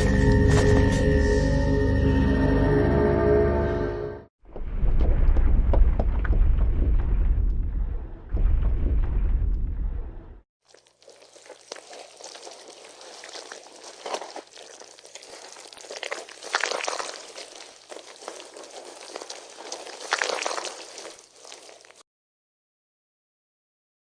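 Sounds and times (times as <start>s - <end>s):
crackling liquid noise: 10.6s - 22.0s.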